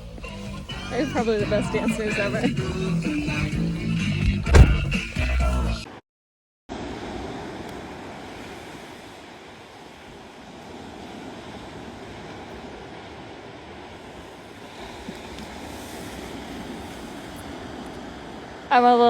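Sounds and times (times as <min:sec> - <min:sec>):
ocean surf washing on beach: 0:06.7 - 0:19.0
wind on microphone: 0:07.1 - 0:19.0.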